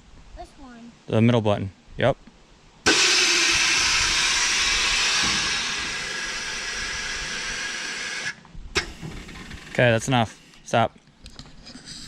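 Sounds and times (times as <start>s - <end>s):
air valve hissing: 2.9s - 10.7s.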